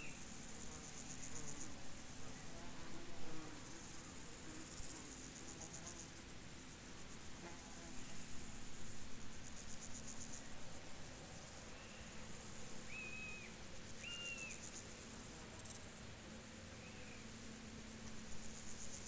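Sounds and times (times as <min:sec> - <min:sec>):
crickets chirring: 0:08.0 - 0:19.0
whistled bird notes: 0:12.9 - 0:14.6.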